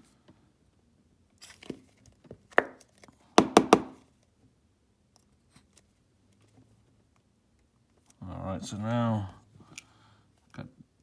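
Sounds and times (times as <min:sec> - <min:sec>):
knock on workbench: 0:03.4 - 0:04.0.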